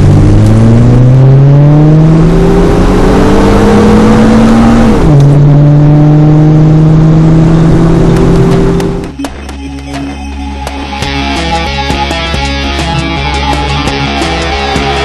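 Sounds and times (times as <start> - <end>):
car engine accelerating: 0.0 - 9.2.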